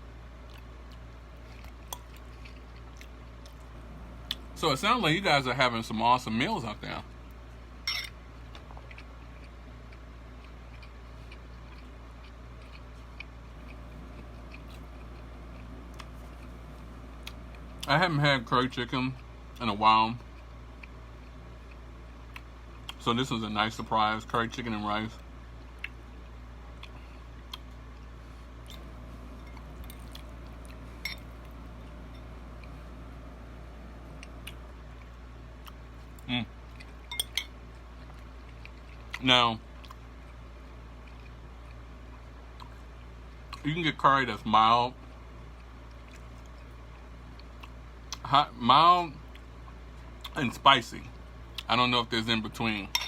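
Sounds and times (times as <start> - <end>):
steady low hum: 0.0 - 53.0
person chewing food: 0.4 - 4.6, 8.2 - 18.0, 20.2 - 23.0, 25.6 - 43.6, 45.1 - 48.2.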